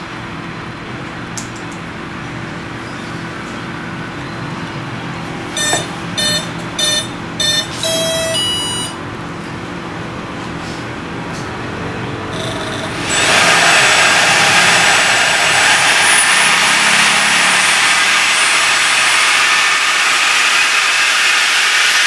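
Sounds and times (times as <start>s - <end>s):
motor controller startup beeps: 5.6s - 9.0s, 12.4s - 13.6s, 14.4s - 21.7s
steady hiss and hum: 12.8s - 22.0s.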